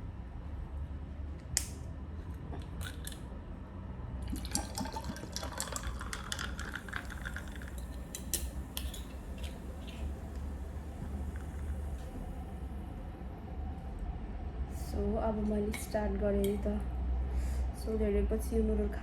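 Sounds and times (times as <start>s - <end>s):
drink pouring over ice: 4.2s - 8.3s.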